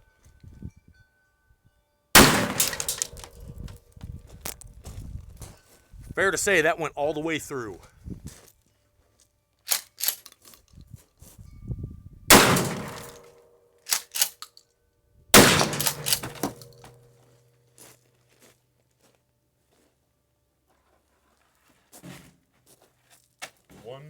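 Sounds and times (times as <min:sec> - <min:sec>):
gun action clicks: 0:02.2 - 0:03.4, 0:09.7 - 0:10.6, 0:12.3 - 0:13.3, 0:13.9 - 0:14.6, 0:15.4 - 0:16.9
shotgun shots: 0:02.2 - 0:03.4, 0:12.3 - 0:13.2, 0:15.4 - 0:16.9.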